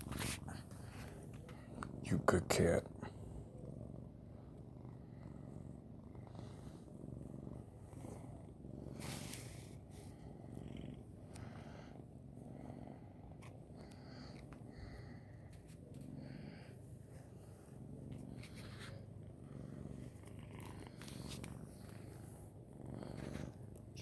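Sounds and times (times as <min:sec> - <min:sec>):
cat purring: 0:00.0 - 0:24.0.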